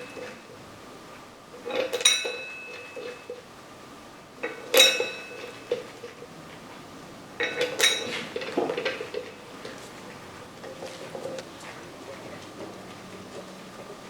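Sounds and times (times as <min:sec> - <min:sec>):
metal tools clinking: 0:04.4 - 0:05.9, 0:07.4 - 0:09.4.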